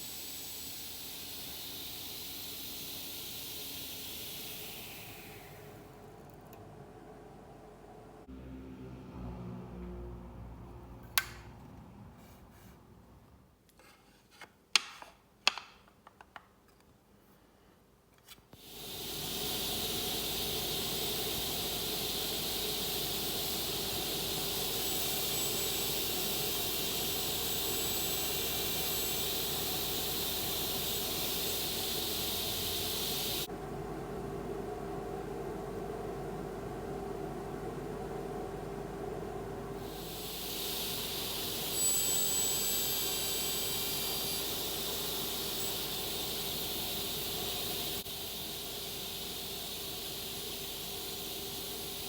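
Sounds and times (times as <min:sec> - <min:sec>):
saw hissing: 0:00.0 - 0:05.8, 0:18.6 - 0:33.5, 0:39.8 - 0:52.0
machine hum: 0:18.6 - 0:52.0.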